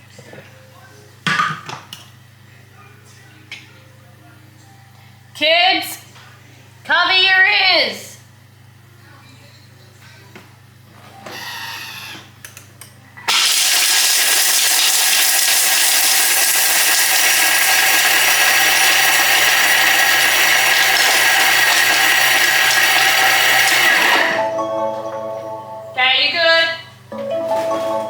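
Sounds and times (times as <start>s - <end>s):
blender grinding chocolate: 13.3s - 24.5s.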